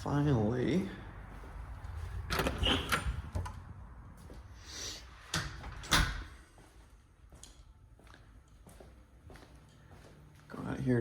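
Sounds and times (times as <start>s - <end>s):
door opening and shutting: 2.2s - 3.7s, 5.2s - 6.4s.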